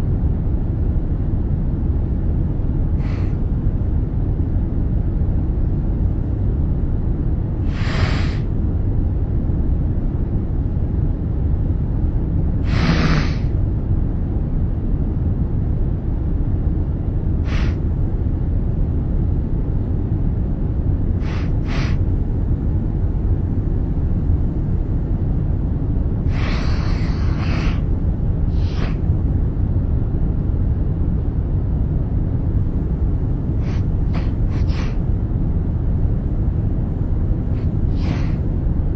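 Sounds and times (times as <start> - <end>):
aircraft cabin rumble: 0.0 - 38.9
man sniffling: 21.2 - 22.0.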